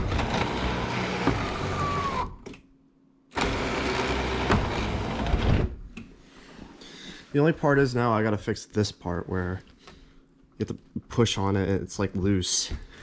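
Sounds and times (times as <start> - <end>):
electric sunroof motor running: 0.0 - 2.4.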